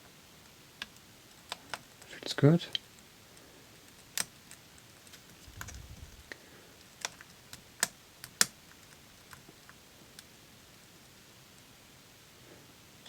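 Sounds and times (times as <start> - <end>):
low handling rumble: 5.4 - 6.4.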